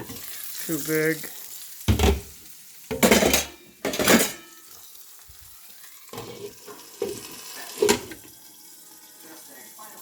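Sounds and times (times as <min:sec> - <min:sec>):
omelet sizzling in a pan: 0:00.0 - 0:10.0
metal pan lids clattering: 0:01.9 - 0:02.3, 0:02.9 - 0:04.6, 0:06.2 - 0:08.2.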